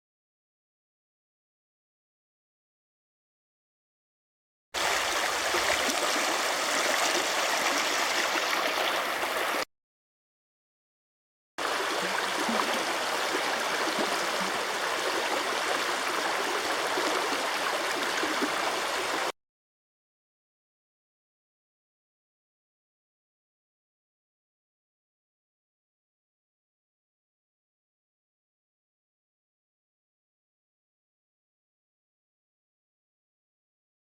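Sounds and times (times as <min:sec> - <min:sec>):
river water rushing: 0:04.8 - 0:09.6, 0:11.6 - 0:19.3.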